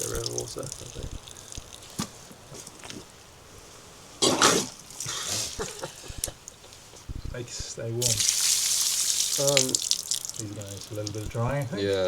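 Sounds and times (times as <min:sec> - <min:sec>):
water dripping: 0:00.0 - 0:03.5, 0:04.7 - 0:12.0
water gushing from footwear: 0:00.0 - 0:03.5, 0:04.2 - 0:06.5, 0:08.0 - 0:11.8
rustling: 0:00.0 - 0:12.0.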